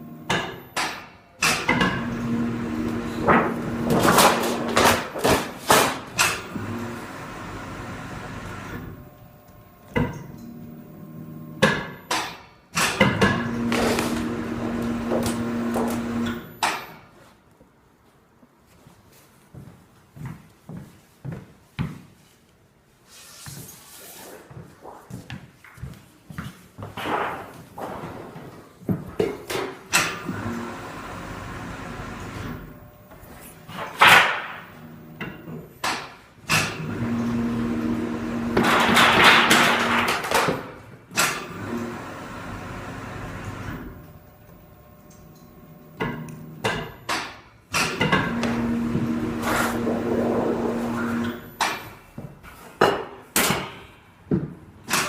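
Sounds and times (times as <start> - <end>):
machine humming and rattling: 1.4 - 12.2, 12.8 - 16.7, 29.9 - 35.7, 36.4 - 40.5, 41.1 - 51.7.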